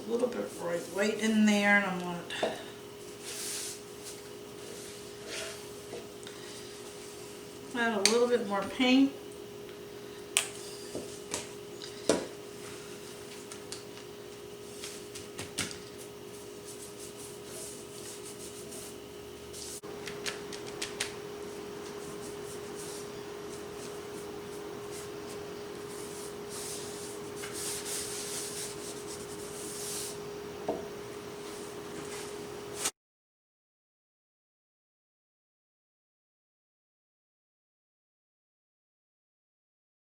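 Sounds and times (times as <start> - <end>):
steady hum: 0.0 - 32.9
paper towel scuffing wood: 3.1 - 6.0, 14.6 - 19.9, 21.5 - 30.2, 31.4 - 32.9.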